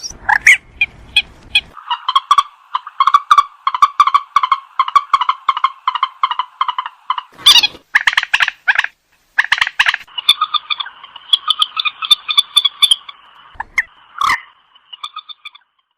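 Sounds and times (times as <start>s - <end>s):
bird calling harsh notes: 0.0s - 15.9s.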